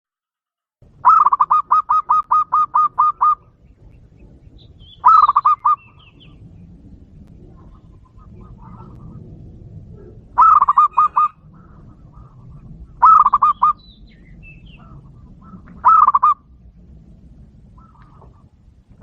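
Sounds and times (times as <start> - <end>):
dove calling clipped notes: 0.9 - 16.6, 17.6 - 19.0.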